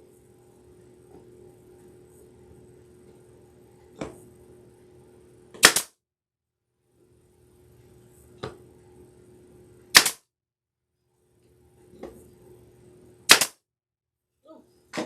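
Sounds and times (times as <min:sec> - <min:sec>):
pneumatic nailer firing: 0:05.6 - 0:06.0, 0:09.9 - 0:10.2, 0:13.3 - 0:13.6.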